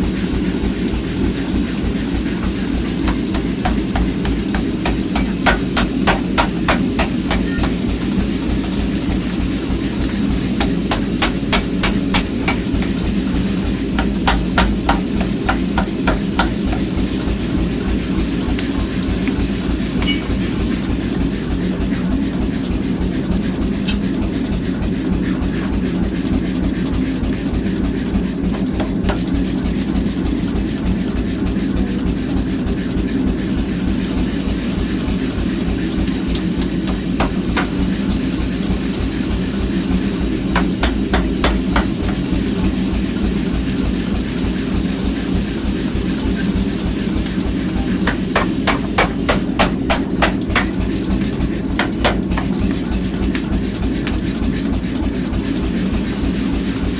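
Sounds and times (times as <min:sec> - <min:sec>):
power hammer motor hum: 0:01.2 - 0:21.5
hammer blows on iron: 0:03.0 - 0:08.0
heavy hammer strikes: 0:03.0 - 0:08.0, 0:10.5 - 0:13.2, 0:13.9 - 0:16.9, 0:36.8 - 0:37.9, 0:40.5 - 0:42.4, 0:47.8 - 0:50.8.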